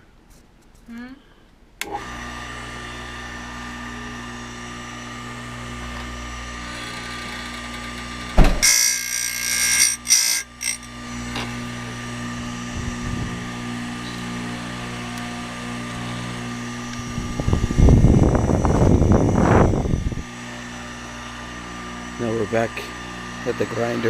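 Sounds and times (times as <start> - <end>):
grinder motor humming: 1.8 - 24.0
grinding wheel hissing on chain: 6.7 - 11.0.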